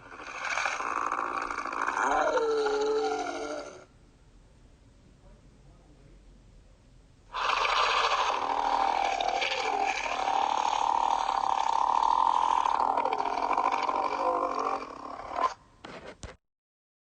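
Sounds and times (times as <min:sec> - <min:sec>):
harsh creature snarl: 0:00.0 - 0:03.8, 0:07.3 - 0:15.6.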